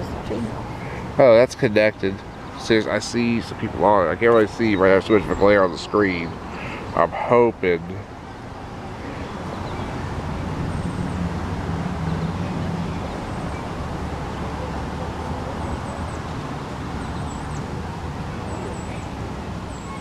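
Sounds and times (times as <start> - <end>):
outdoor rumble and hiss: 0.0 - 20.0.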